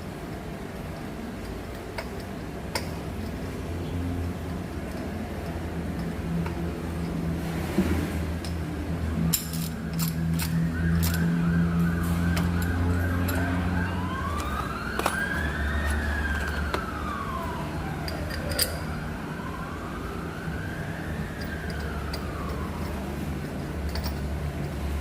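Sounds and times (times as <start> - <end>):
emergency vehicle siren: 8.2 - 25.0.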